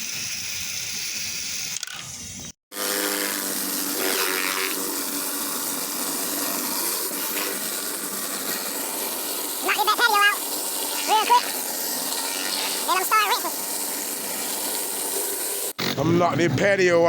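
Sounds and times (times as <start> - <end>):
water spray hissing: 0.0 - 1.8, 2.8 - 15.8
pressure washer hum: 2.7 - 15.8.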